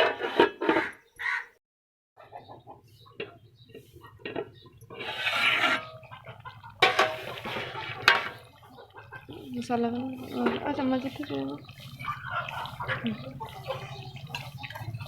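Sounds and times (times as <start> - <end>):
metal spoon scraping in a pot: 4.3 - 6.1, 6.8 - 8.5, 9.3 - 15.0.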